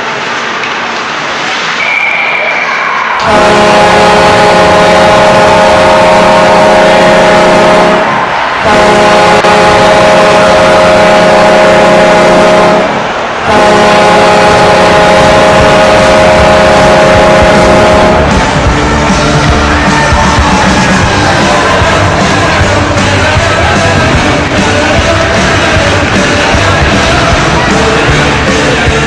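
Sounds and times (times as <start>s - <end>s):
loud rock music: 8.7s - 29.0s.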